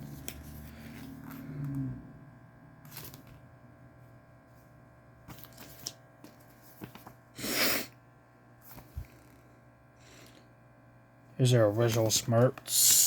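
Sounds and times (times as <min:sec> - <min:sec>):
faint steady hum: 0:00.0 - 0:13.0
paper rustling: 0:05.3 - 0:07.2.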